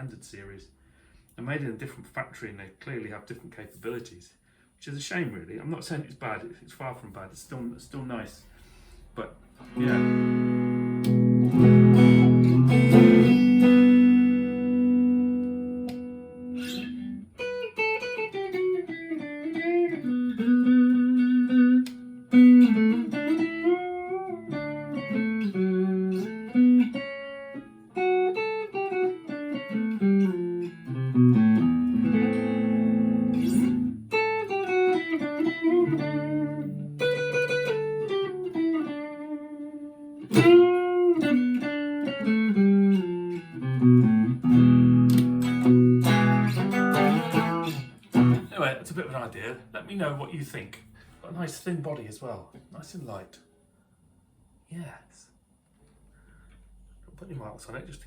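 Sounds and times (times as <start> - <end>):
electric guitar playing: 8.4 - 51.2.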